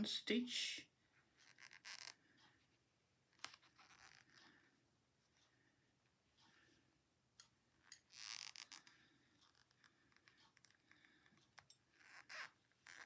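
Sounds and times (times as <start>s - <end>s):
knitting needles clicking: 7.4s - 13.0s.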